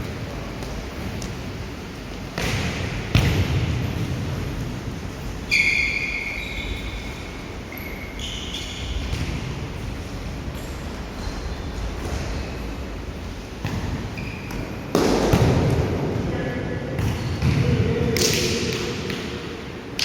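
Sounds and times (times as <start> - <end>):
high-pitched squeals: 5.5 - 9.0.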